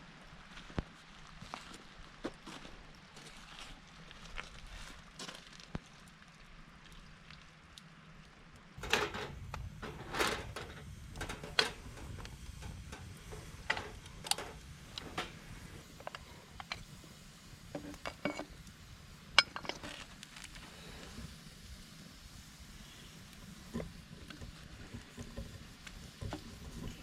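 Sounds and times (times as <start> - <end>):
cookware clinking and knocking: 8.8 - 11.8, 19.4 - 19.9.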